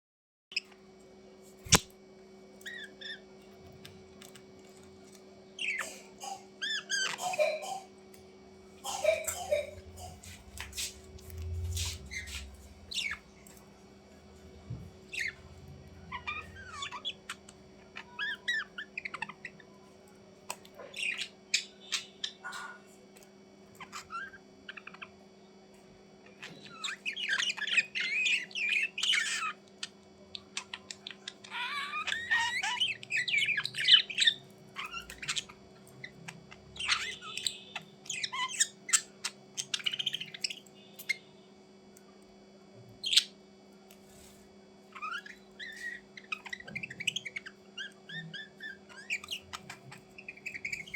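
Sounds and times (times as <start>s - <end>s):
steady low hum: 0.6s - 50.9s
bird chirping and squawking: 2.6s - 3.4s, 5.6s - 7.8s, 8.9s - 13.6s, 15.1s - 19.9s, 20.5s - 22.9s, 23.7s - 25.2s, 26.3s - 41.4s, 43.0s - 43.4s, 44.1s - 50.9s.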